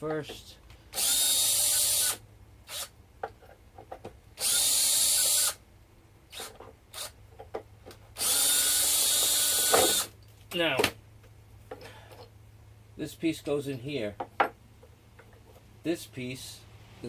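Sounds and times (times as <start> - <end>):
power drill-driver running: 1.0 - 2.9, 4.4 - 5.6, 8.2 - 10.1
light clicks and handling knocks: 3.2 - 4.2.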